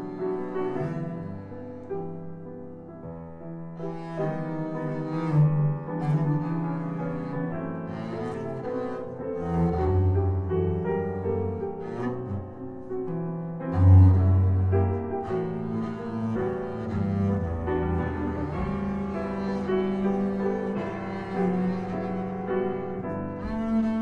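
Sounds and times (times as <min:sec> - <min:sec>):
piano playing: 0:00.0 - 0:24.0.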